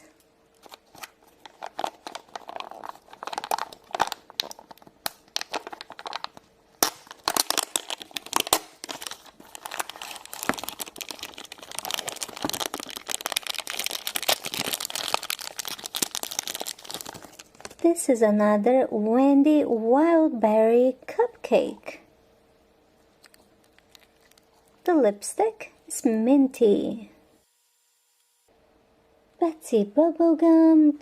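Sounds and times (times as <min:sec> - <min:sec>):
packaging clicks and handling: 0:00.5 - 0:17.8
wrapper crinkling and tearing: 0:00.5 - 0:17.8.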